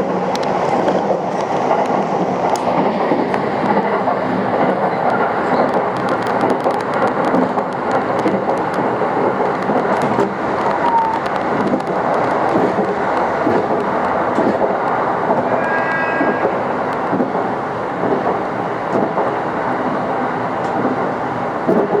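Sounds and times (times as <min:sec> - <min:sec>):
train wheels rumbling on rails: 0:00.0 - 0:22.0.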